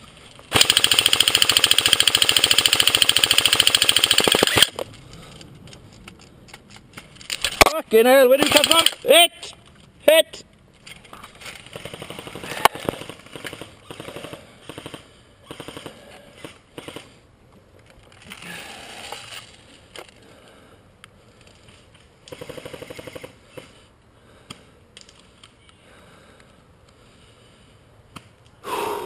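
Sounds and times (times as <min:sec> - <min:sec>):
airsoft rifle full-auto bursts: 0:00.5 - 0:04.8, 0:08.4 - 0:09.0.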